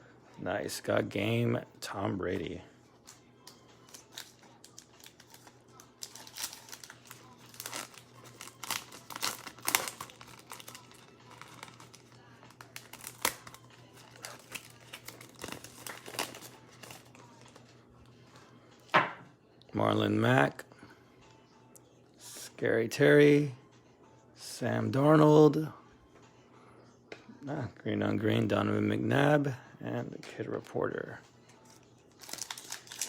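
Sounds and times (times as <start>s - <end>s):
card pack wrapper tearing and crinkling: 3.8s - 17.6s, 31.7s - 33.0s.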